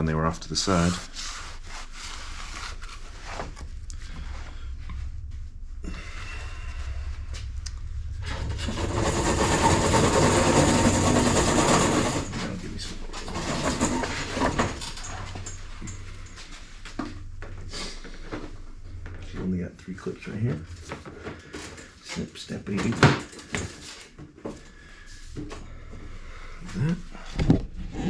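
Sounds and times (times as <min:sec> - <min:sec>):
rushing noise: 0:00.3 - 0:21.0.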